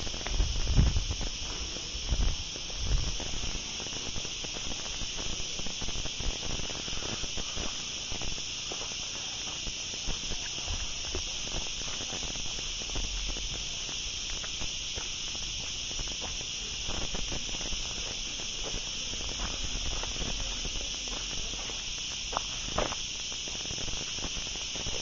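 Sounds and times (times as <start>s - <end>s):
footsteps on rough ground: 0.0s - 5.4s, 6.6s - 23.2s
steady high hiss: 0.0s - 25.0s.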